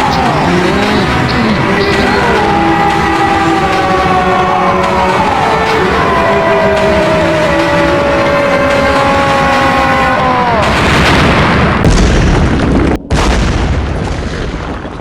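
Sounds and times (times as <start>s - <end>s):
rumbling explosion booms: 9.2s - 15.0s.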